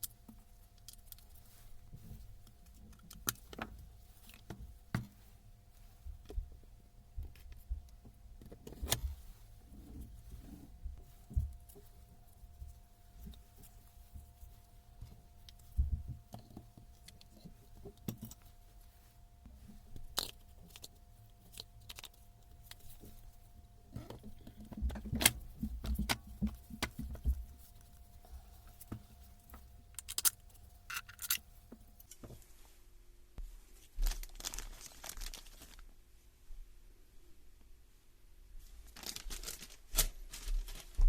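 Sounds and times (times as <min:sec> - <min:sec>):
faint steady hum: 0:00.0 - 0:41.0.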